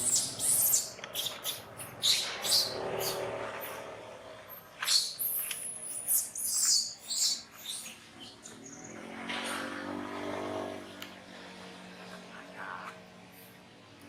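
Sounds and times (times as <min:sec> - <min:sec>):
young monkey squealing: 0:00.0 - 0:03.2, 0:04.8 - 0:08.0.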